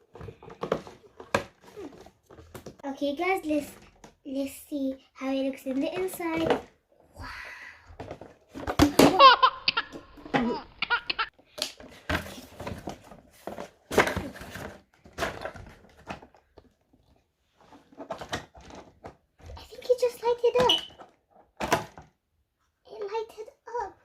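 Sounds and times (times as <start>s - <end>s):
toy packaging rustling: 0.0s - 4.5s, 7.9s - 21.6s
child laughing and squealing: 9.1s - 11.3s.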